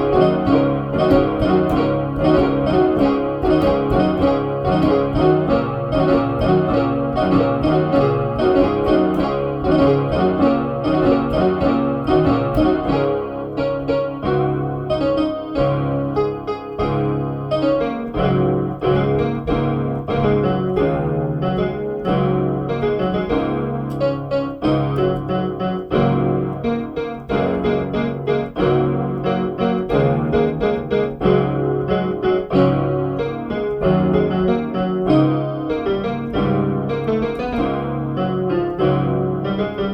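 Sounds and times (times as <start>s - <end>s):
electronic keyboard piano music: 0.0s - 39.9s.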